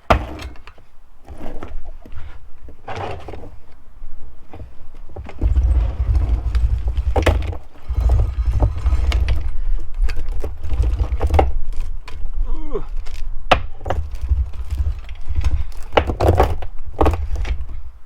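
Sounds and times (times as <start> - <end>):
heavy low rumble: 5.2 - 11.7
metal chain clinking and rattling: 5.3 - 11.3.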